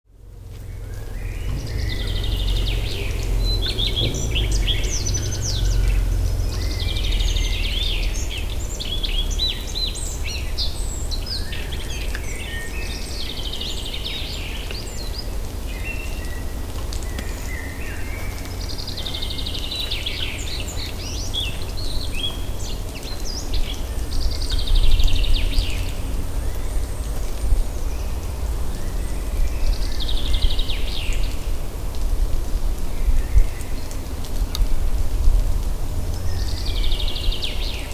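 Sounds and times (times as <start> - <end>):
steady low rumble: 0.1 - 10.5
songbirds chirping: 0.1 - 37.9.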